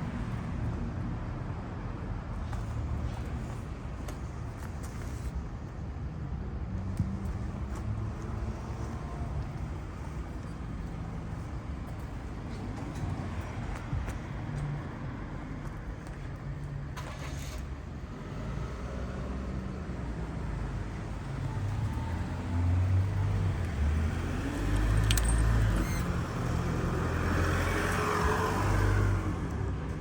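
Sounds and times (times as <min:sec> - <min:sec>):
road vehicles passing: 0:00.0 - 0:30.0.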